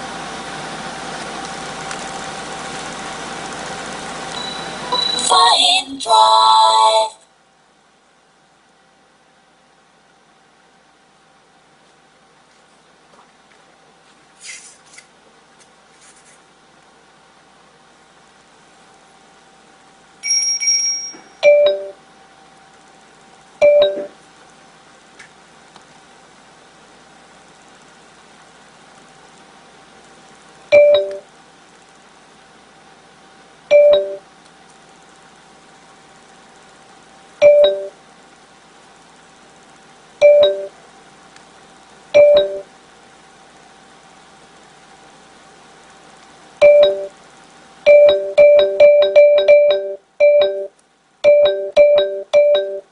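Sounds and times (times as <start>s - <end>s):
short high beep: 4.4s - 5.3s.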